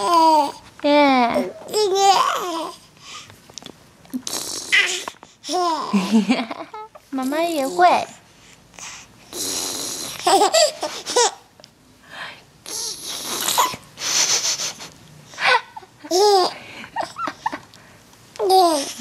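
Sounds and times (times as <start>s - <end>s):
breathy wheezy laughing: 12.7s - 17.8s.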